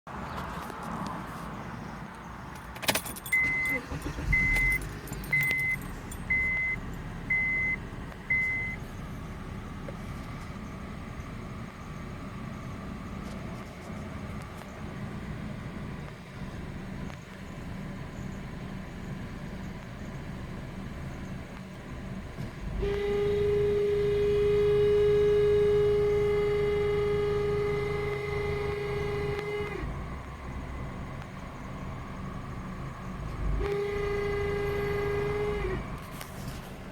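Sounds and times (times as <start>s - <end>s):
car engine idling: 1.4s - 36.9s
keys rattling: 2.8s - 6.4s
car warning chime beeping: 3.2s - 13.0s
loud steady horn-like tone: 22.6s - 29.3s, 33.5s - 35.5s.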